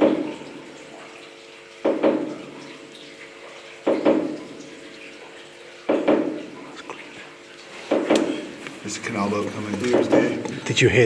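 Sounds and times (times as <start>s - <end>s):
water splashing with echo: 0.0s - 11.0s.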